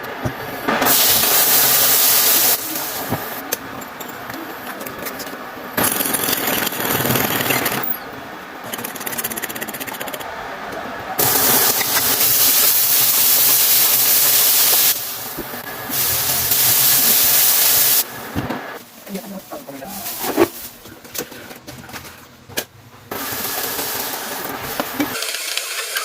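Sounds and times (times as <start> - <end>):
vegetables sizzling in a pan: 0.8 - 3.3, 11.2 - 18.1, 23.1 - 26.0.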